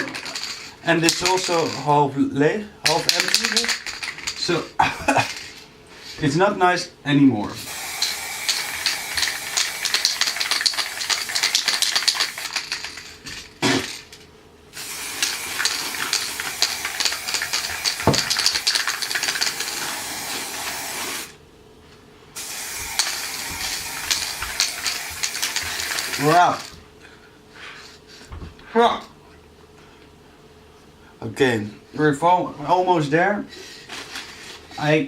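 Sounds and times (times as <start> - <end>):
spray-paint can hissing: 7.6 - 13.1, 14.8 - 21.4, 22.4 - 26.7.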